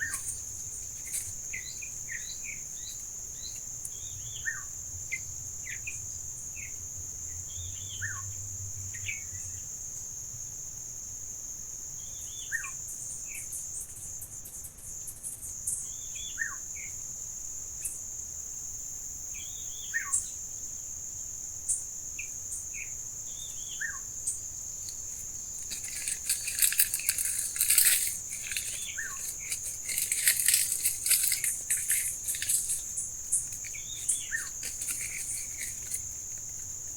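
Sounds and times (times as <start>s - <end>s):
insects droning: 0.0s - 36.9s
scratchy chattering and clicking: 24.9s - 36.9s
bird chirping: 25.8s - 36.7s.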